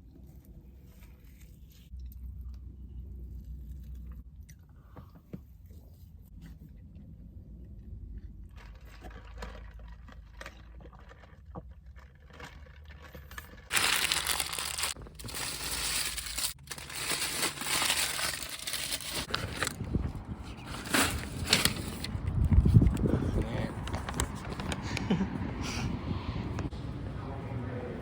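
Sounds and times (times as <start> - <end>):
food wrapper crinkling: 13.4 - 19.8.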